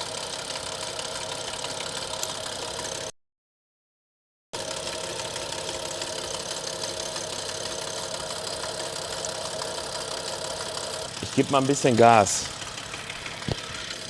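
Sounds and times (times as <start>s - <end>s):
fast rattling from engine: 0.0s - 3.1s, 4.6s - 14.0s
car engine idling: 5.0s - 14.0s.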